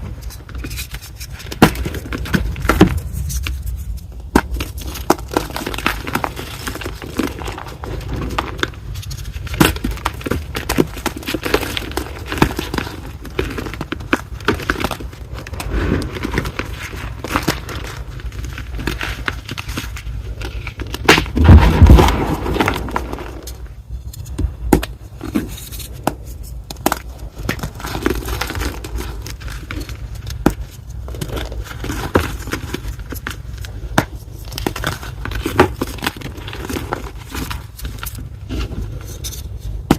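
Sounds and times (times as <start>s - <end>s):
chalk block crunching: 0.0s - 39.9s.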